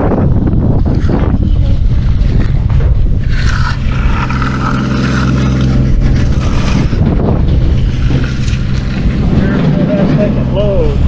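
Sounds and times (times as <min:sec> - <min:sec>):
engine running steadily: 0:00.0 - 0:11.0
rough high-pitched noise: 0:00.7 - 0:11.0.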